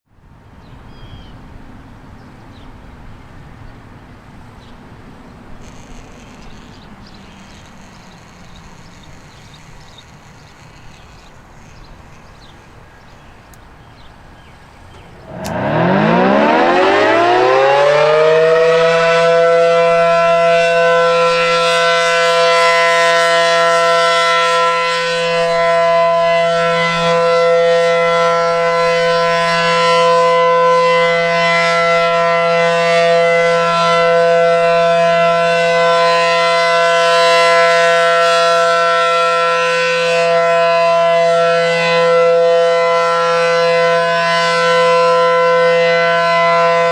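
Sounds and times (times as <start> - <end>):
warning siren winding up: 5.6 - 12.7, 14.9 - 32.2.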